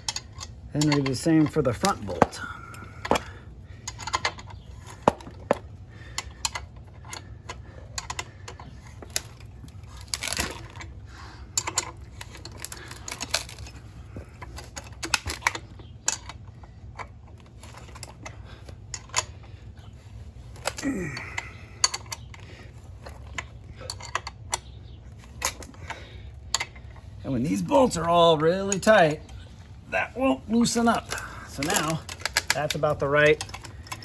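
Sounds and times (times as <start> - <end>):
wrench clinking on metal bolt: 0.0 - 3.3, 27.9 - 29.5.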